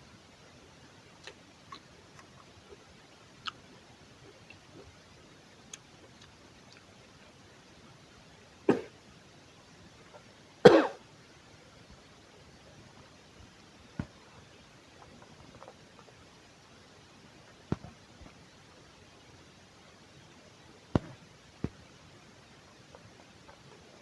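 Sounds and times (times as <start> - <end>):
person coughing: 8.7 - 9.0, 10.7 - 11.0.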